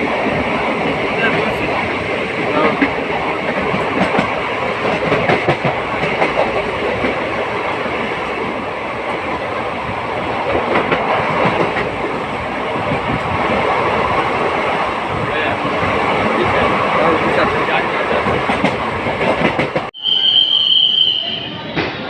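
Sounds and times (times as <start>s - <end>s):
train wheels rumbling: 0.0s - 22.0s
wheels clicking over rail joints: 0.2s - 8.4s.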